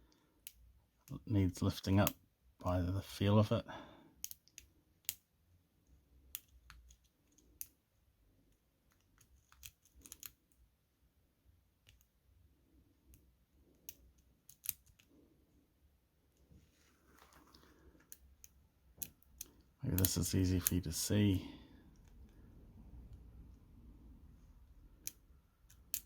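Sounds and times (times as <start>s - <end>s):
lock pick clicking and scraping: 8.9s - 10.5s, 13.1s - 15.1s, 25.0s - 26.0s.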